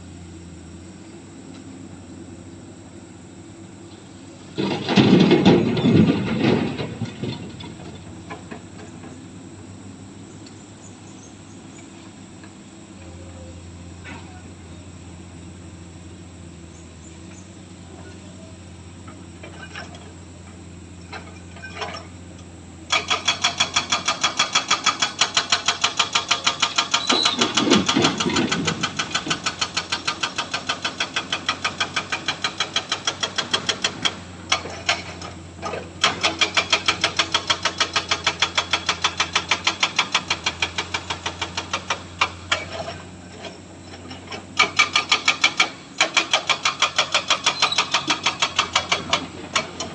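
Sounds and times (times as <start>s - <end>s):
diesel engine idling: 0.0s - 49.9s
hydraulic breaker pounding rock: 4.5s - 9.3s, 22.9s - 49.9s.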